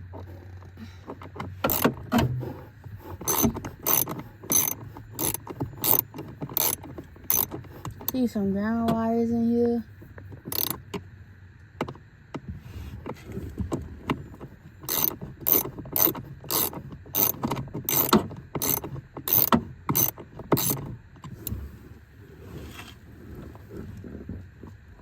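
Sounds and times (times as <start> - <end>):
hand ratchet clicking: 1.2 - 8.2, 10.5 - 10.8, 14.8 - 20.8.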